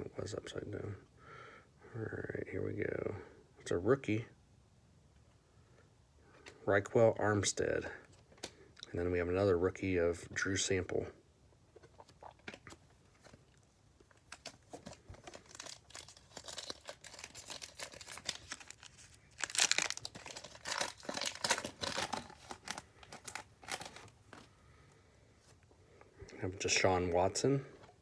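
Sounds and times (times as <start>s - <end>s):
wrapper tearing and crinkling: 14.1s - 24.5s.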